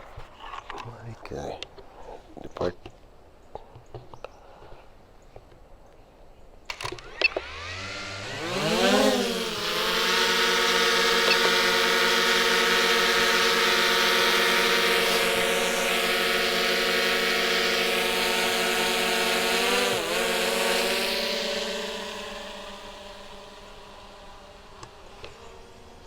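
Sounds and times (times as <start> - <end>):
drone propellers whining and buzzing: 6.7 - 26.0.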